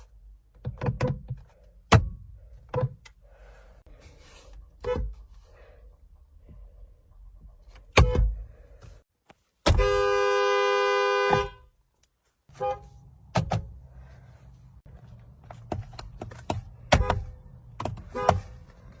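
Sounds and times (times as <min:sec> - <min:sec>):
car horn blast: 0:09.7 - 0:11.7, 0:12.5 - 0:13.0, 0:18.0 - 0:18.6.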